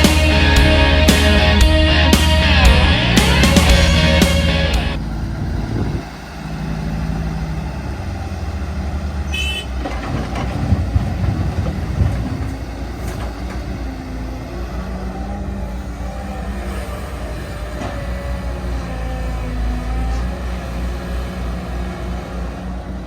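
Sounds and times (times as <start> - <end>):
intro music: 0.0 - 5.0
excavator diesel rumble: 0.0 - 23.0.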